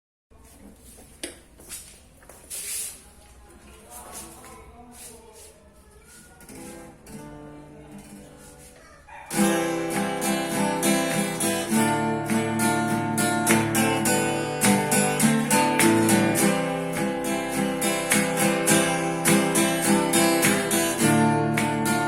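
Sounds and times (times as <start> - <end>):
acoustic guitar notes: 6.1 - 22.0
acoustic guitar strummed chords: 6.5 - 8.6, 9.3 - 22.0.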